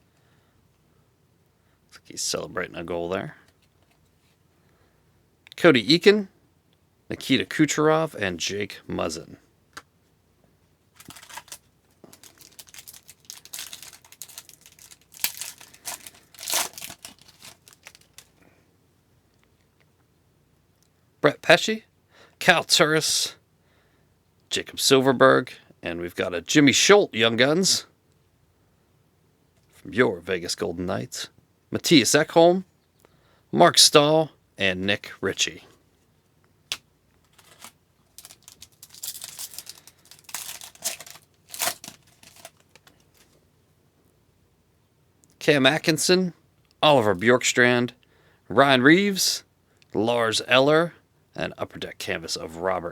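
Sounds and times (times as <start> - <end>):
wrapper tearing and crinkling: 11.0 - 18.3, 37.3 - 43.2.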